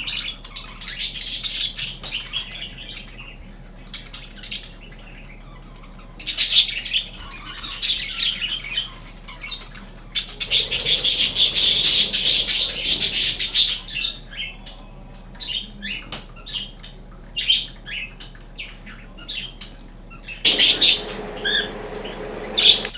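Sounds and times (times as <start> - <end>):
budgerigars chirping: 0.0 - 22.9
wings flapping: 10.0 - 22.9.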